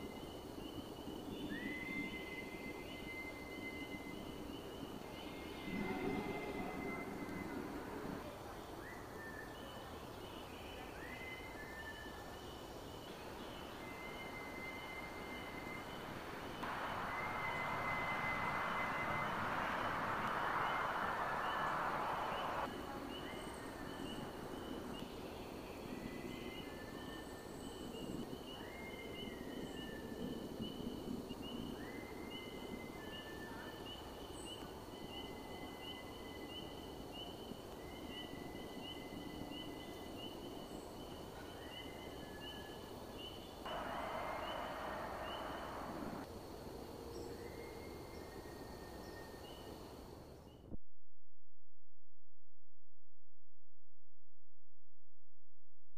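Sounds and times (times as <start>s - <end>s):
loud rushing noise: 15.5s - 22.7s, 43.7s - 46.3s.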